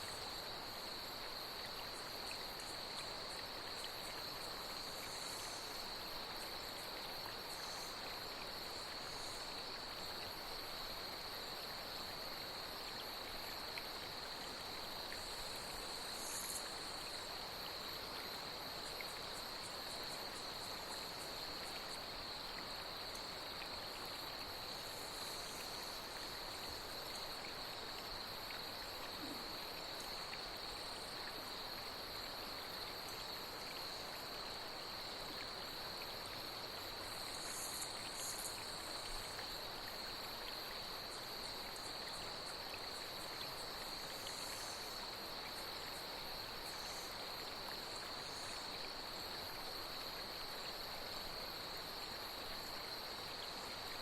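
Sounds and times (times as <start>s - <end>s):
flowing stream: 0.0s - 54.0s
night insects trilling: 0.0s - 54.0s
high insect chirps: 12.4s - 49.8s.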